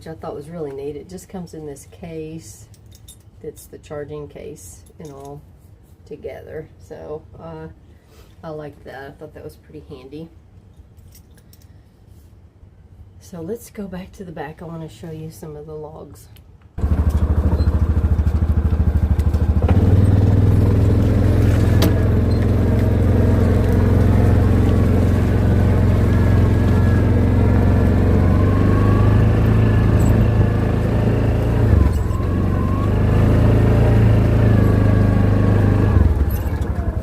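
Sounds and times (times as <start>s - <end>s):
vehicle engine running: 16.8s - 37.0s.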